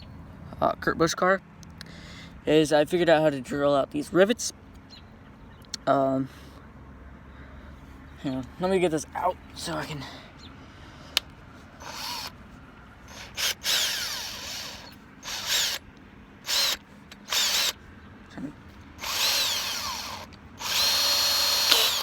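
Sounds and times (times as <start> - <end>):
small power drill whirring: 11.8 - 12.4, 13.1 - 15.8, 16.4 - 17.8, 19.0 - 22.0.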